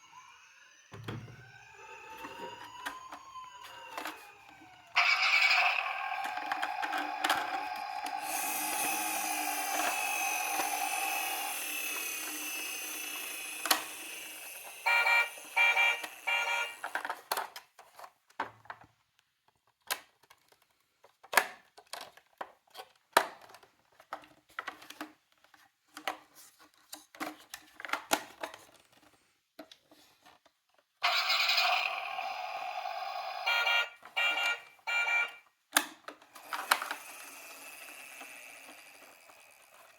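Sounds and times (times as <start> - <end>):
toy siren: 0.0 - 17.1, 31.0 - 35.5, 36.4 - 39.9
plastic toy cars clicking: 5.0 - 39.9
repeated beeping tones: 13.1 - 16.8, 33.4 - 35.4.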